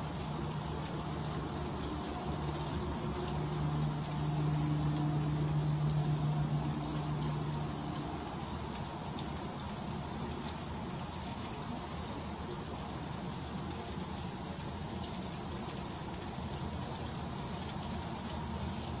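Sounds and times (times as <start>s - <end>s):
freezing rain pattering: 0.0s - 19.0s
low hum: 0.3s - 9.2s.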